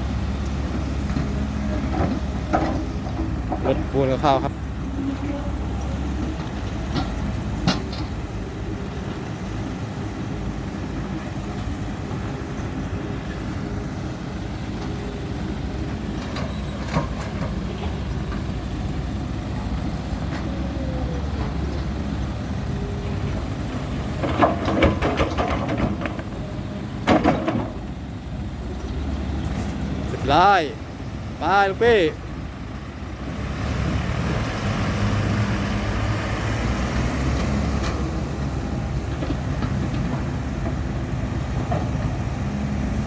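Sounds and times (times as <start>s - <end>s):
diesel truck engine rumbling: 0.0s - 43.0s
sharp knocks and clanks: 24.2s - 26.3s, 27.0s - 27.9s.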